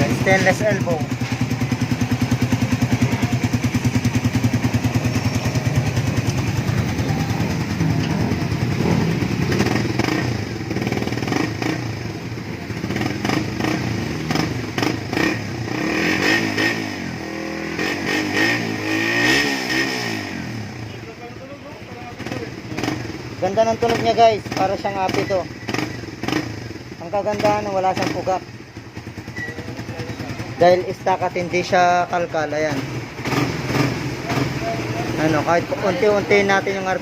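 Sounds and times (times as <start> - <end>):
motorcycle engine revving: 0.0 - 37.0.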